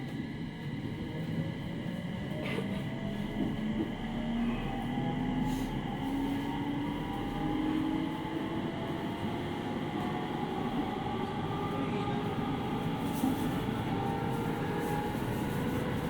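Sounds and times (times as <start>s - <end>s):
train wheels rumbling on rail: 0.1s - 4.4s.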